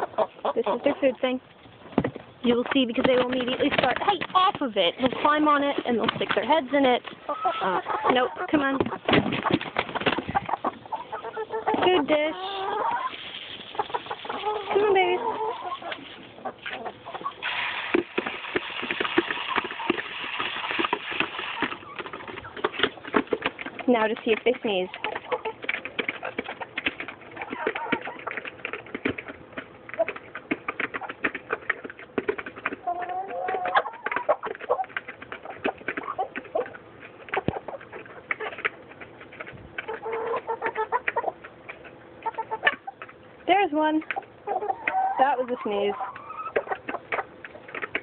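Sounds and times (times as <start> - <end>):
chicken beaks pecking dish: 0.0 - 48.0
chickens clucking and trilling: 0.0 - 48.0.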